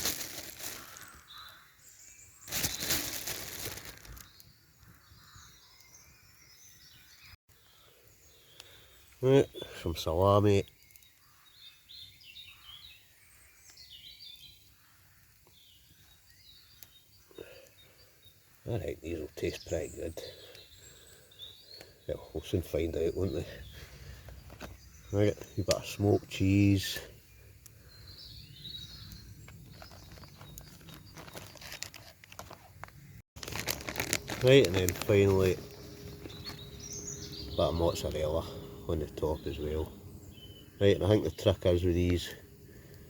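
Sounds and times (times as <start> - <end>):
soft ticks and handling noises: 0.0 - 1.6, 2.4 - 5.0, 7.5 - 11.7, 13.6 - 28.0, 28.7 - 39.9
faint birds chirping: 0.0 - 43.0
woodland background hush: 0.0 - 43.0
bird twittering: 10.7 - 18.6, 27.2 - 31.1, 34.8 - 42.1.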